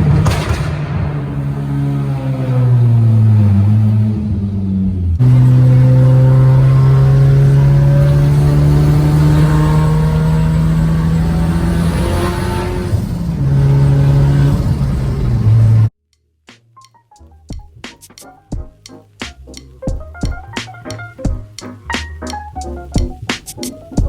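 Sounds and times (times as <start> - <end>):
car engine accelerating hard: 0.0 - 15.9.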